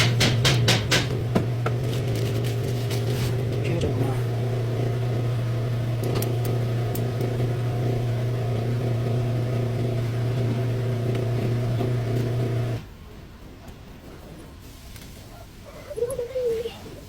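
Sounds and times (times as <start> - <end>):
car engine idling: 0.0 - 12.8.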